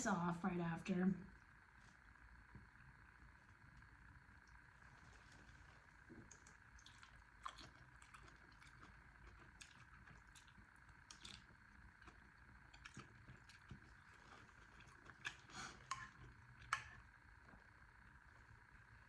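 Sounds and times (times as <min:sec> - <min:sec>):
soft squishes: 0:04.5 - 0:17.6.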